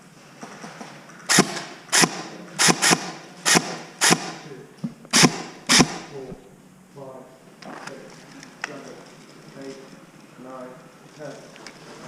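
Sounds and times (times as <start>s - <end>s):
airsoft gun shots: 1.3s - 4.5s, 5.1s - 6.2s.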